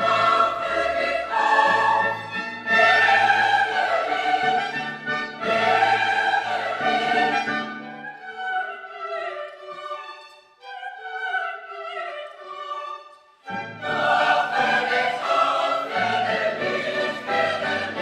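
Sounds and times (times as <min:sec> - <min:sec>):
orchestra and choir: 0:00.0 - 0:18.0.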